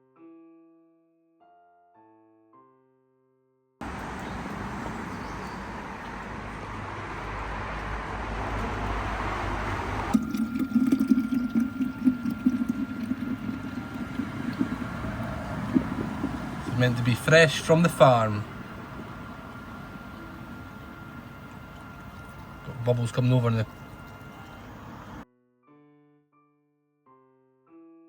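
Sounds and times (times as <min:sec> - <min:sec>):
steady low hum: 0:03.8 - 0:25.2
liquid pouring into container: 0:10.1 - 0:25.2
irregular knocks: 0:12.5 - 0:16.8.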